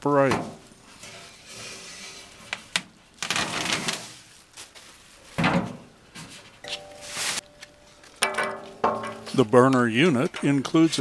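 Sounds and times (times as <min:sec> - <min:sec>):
metal table scraping: 0:00.3 - 0:02.6, 0:08.2 - 0:09.5.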